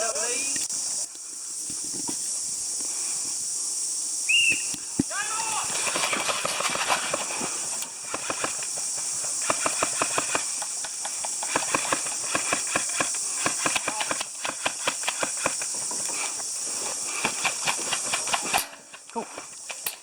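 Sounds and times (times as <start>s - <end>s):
steady high-pitched hiss: 0.0s - 20.0s.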